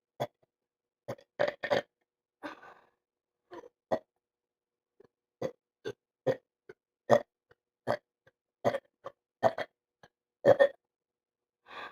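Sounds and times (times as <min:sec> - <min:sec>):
short burps: 0:01.1 - 0:01.9, 0:07.9 - 0:09.8, 0:10.4 - 0:10.8.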